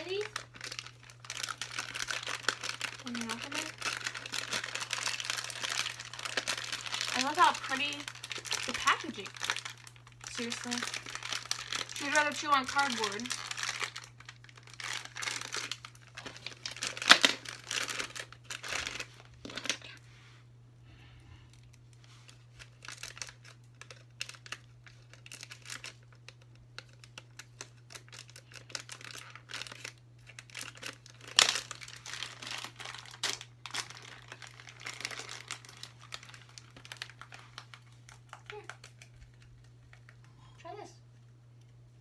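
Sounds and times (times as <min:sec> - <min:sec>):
packaging crinkling and rustling: 0:00.0 - 0:20.0, 0:21.5 - 0:40.3
faint steady hum: 0:00.0 - 0:42.0.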